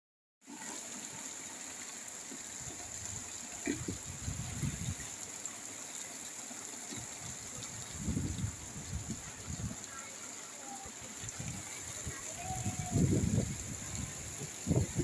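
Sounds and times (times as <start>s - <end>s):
steady rain hiss: 0.5s - 15.0s
wind buffeting microphone: 2.6s - 5.1s, 7.0s - 10.0s, 11.2s - 15.0s.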